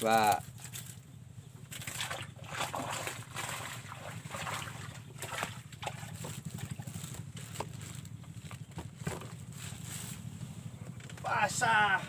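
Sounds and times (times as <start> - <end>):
low hum: 0.0 - 12.0
water splashing and lapping: 1.6 - 8.1.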